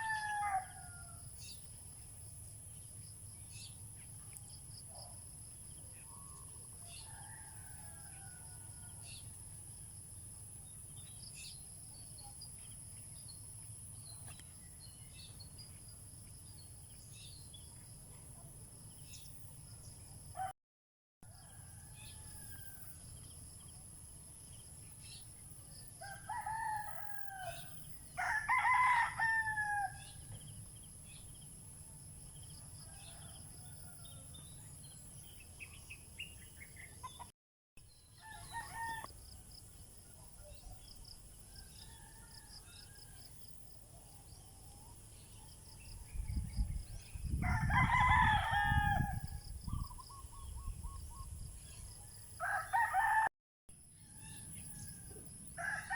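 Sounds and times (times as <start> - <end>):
rooster crowing: 0.0 - 1.2, 7.0 - 9.0, 26.0 - 30.1, 47.4 - 49.3, 52.4 - 53.3, 55.6 - 55.9.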